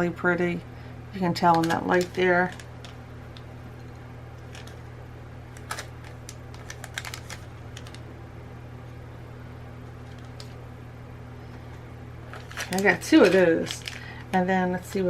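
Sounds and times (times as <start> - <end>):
low electrical hum: 0.0 - 15.0
beads in plastic packets crinkling: 1.4 - 3.0, 4.4 - 4.8, 5.5 - 8.0, 12.3 - 15.0.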